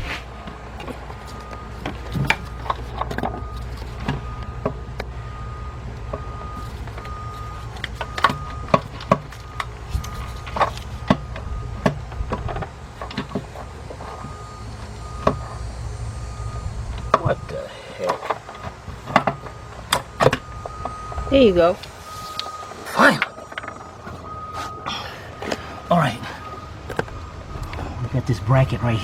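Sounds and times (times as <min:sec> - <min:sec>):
steady low hum: 0:00.0 - 0:29.0
metal parts knocking and clunking: 0:00.4 - 0:05.2, 0:05.9 - 0:15.6, 0:16.9 - 0:21.0.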